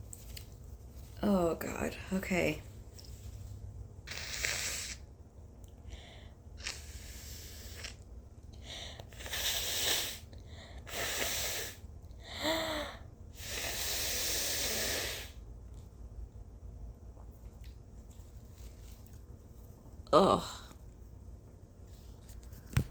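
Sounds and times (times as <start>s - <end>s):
woman blowing air through nose: 4.0s - 5.1s, 6.5s - 8.0s, 9.0s - 15.4s
sniffing: 4.1s - 5.0s.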